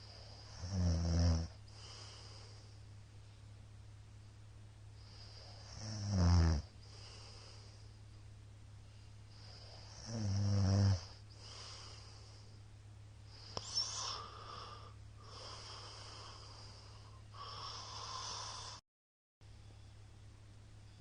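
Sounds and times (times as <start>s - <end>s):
man snoring: 0.0s - 2.5s, 5.1s - 7.5s, 9.4s - 12.2s, 13.4s - 18.8s.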